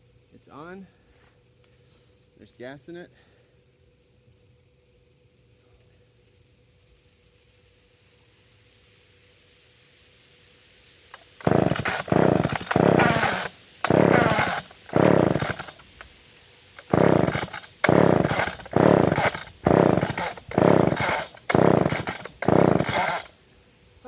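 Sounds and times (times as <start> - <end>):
starter rope zipping out: 11.1 - 16.0, 16.8 - 23.3
chainsaw engine turning over: 11.1 - 16.1, 16.8 - 23.4.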